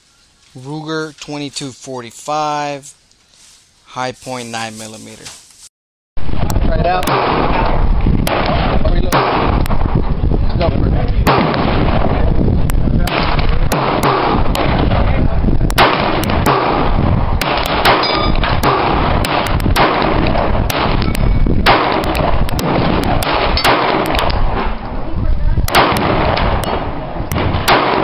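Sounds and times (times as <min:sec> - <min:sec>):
constant loud noise: 0:06.2 - 0:28.0
gunshots: 0:06.3 - 0:10.1, 0:11.2 - 0:24.9, 0:25.6 - 0:28.0.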